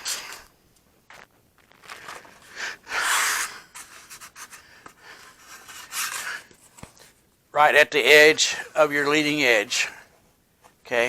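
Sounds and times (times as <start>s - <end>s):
tape rustling and rubbing: 1.1s - 7.2s.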